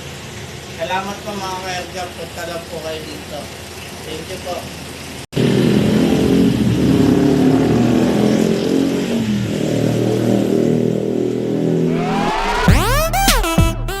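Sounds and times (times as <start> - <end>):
vehicle engine running loudly: 5.4 - 12.8
electronic music sweep: 11.9 - 14.0.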